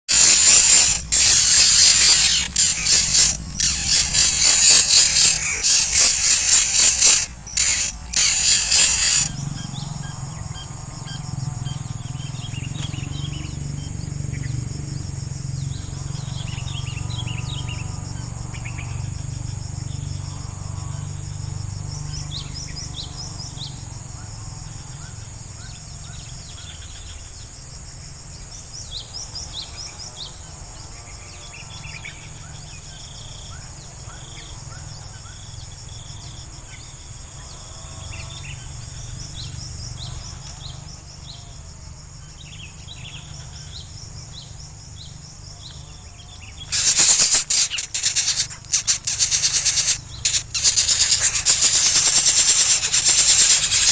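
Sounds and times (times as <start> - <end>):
high insect whine: 0.1 - 53.9
bird chirps and calls: 46.6 - 53.9.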